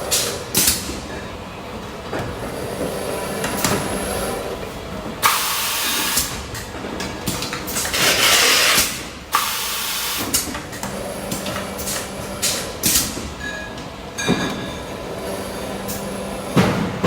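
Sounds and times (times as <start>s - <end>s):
loud machinery hiss: 5.2s - 6.5s, 7.8s - 13.2s, 14.9s - 17.0s.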